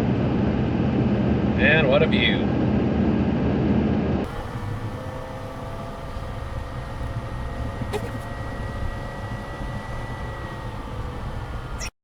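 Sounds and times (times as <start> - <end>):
vehicle engine and road rumble: 0.0 - 12.0
faint steady whine: 4.3 - 12.0.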